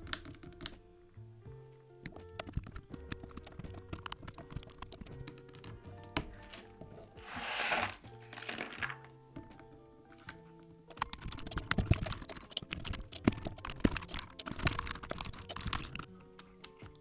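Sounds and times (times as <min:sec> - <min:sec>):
background music: 0:00.0 - 0:17.0
mechanical keyboard typing: 0:02.1 - 0:05.8, 0:10.9 - 0:17.0.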